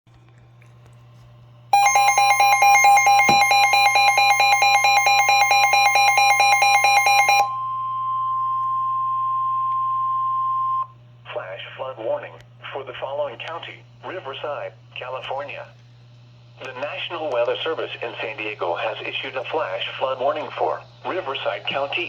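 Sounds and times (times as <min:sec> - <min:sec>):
steady alarm tone: 0:01.7 - 0:10.9
rapid electronic beeping alarm: 0:01.8 - 0:07.9.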